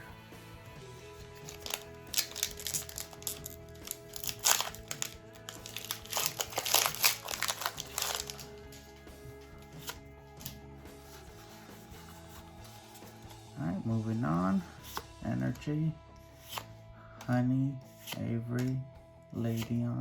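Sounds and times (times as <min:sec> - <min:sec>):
quiet background music: 0:00.0 - 0:20.0
foil wrapper crinkling: 0:01.3 - 0:08.8.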